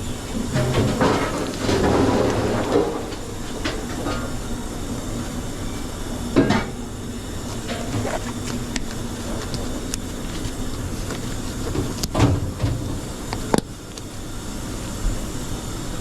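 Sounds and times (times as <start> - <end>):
steady mechanical hum: 0.0 - 16.0
clatter of dishes and utensils: 0.4 - 4.4.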